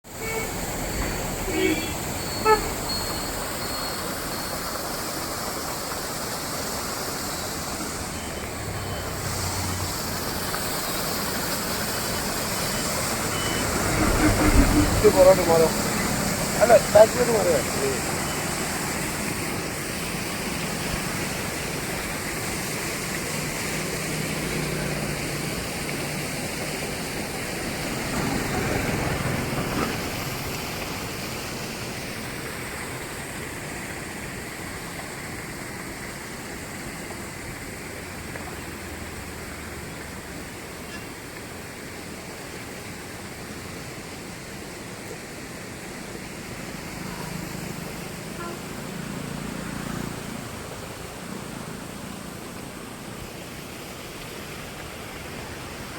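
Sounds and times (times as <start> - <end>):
steady rushing noise: 5.6 - 34.8.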